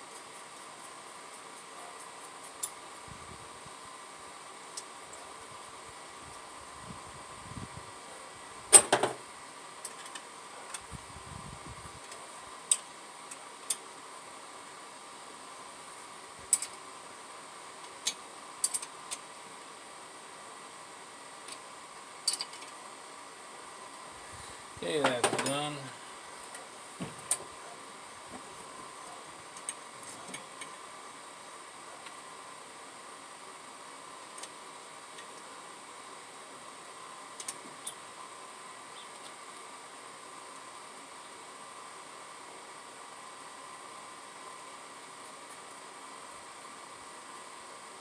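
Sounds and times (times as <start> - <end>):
faint hum: 0.0 - 48.0
small parts and tools clicking: 0.1 - 2.8, 9.8 - 10.9, 12.0 - 13.9, 16.5 - 16.8, 17.8 - 19.3, 22.2 - 22.8, 29.5 - 30.8, 37.4 - 38.0
small metal parts clinking: 22.2 - 22.8.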